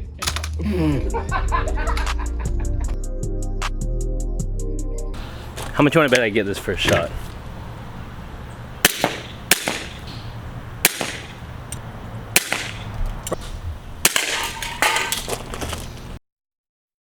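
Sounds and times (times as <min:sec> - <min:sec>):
airsoft gun shots: 0:08.8 - 0:10.2, 0:10.8 - 0:11.4, 0:12.4 - 0:12.9, 0:14.0 - 0:15.2.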